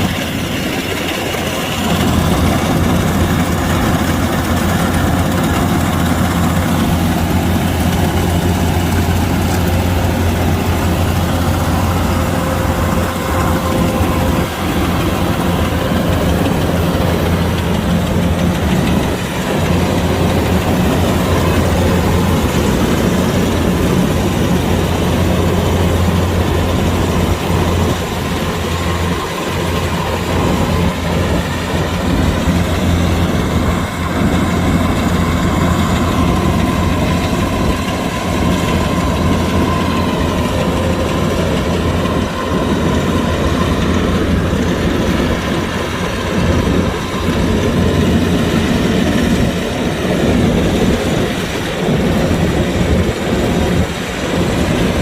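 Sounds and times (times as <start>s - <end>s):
combine harvester engine droning: 0.0s - 55.0s.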